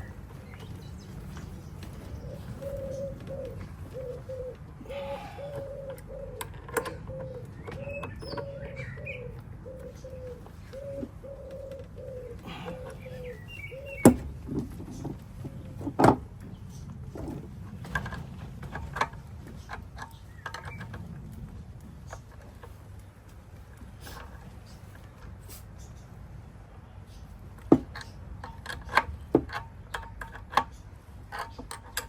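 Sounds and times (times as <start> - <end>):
knocks and clicks on scooter wheel: 4.9 - 25.4, 27.4 - 32.0.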